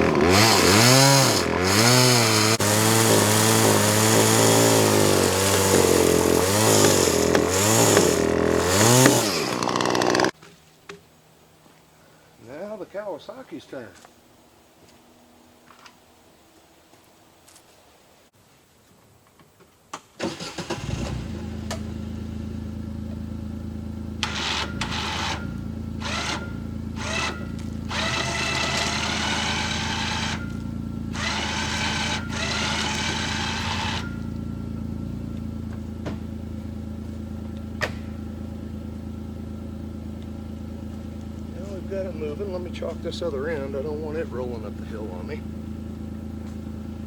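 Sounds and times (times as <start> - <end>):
utility vehicle engine revving and idling: 0.0 - 10.4, 20.2 - 47.0.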